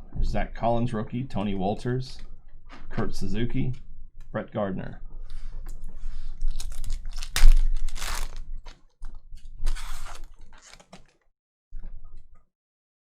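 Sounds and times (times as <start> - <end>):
foil wrapper tearing and crinkling: 6.5 - 8.4.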